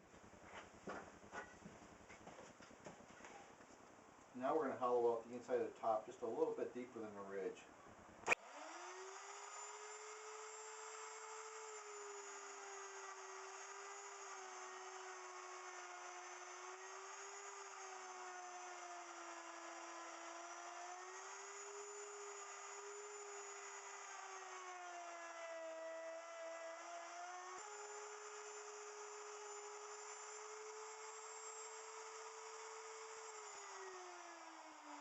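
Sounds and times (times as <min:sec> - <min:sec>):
wood router whining: 0:08.2 - 0:35.0.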